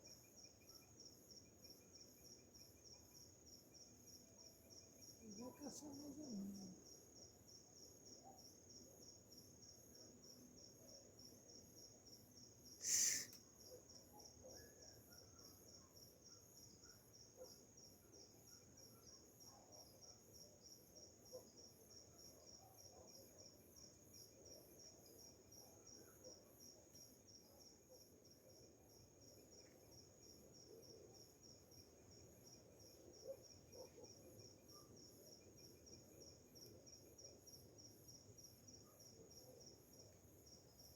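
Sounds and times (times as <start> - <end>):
crickets trilling: 12.1 - 13.7.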